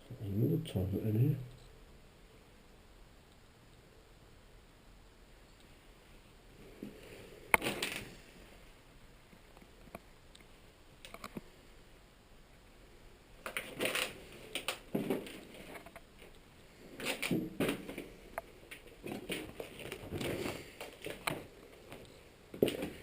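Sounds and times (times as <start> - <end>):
footsteps crunching on debris: 18.7 - 23.0.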